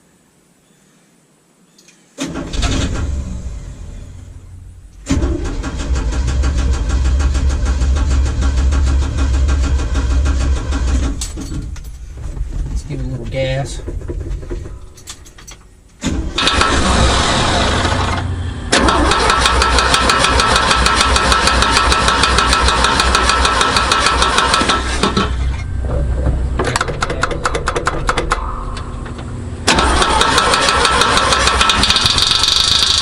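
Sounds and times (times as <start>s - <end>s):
truck engine starting and revving: 2.2s - 11.4s, 16.0s - 26.9s, 28.1s - 33.0s
fast metallic rattle: 18.8s - 25.6s, 29.7s - 33.0s.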